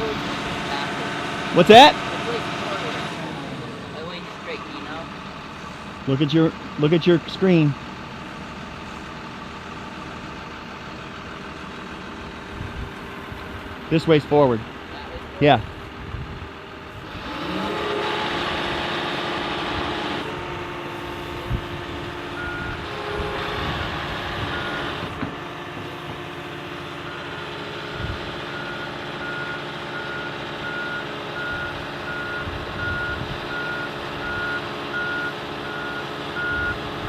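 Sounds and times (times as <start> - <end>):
excavator diesel engine: 0.0 - 37.0
travel alarm beeping: 22.4 - 22.8, 28.6 - 36.8.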